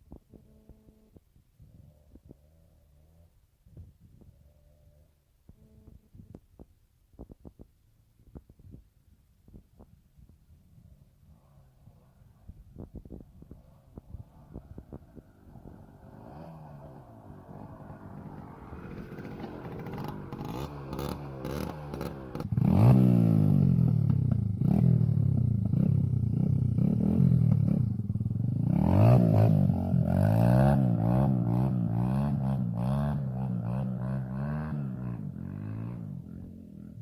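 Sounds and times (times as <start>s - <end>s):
small motorcycle engine revving: 10.8s - 37.0s.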